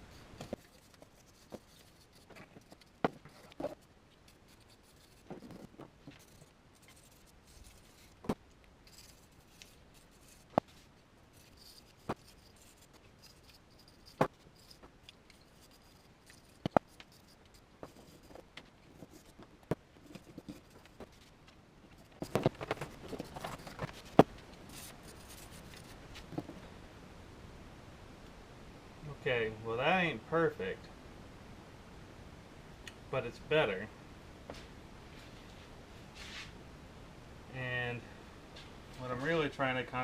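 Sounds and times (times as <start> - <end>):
wire brush scraping rusty metal: 0.0 - 19.4.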